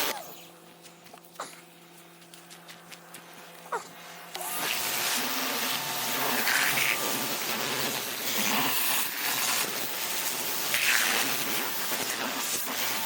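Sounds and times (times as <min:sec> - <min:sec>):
pressure washer spraying water: 0:04.4 - 0:13.0.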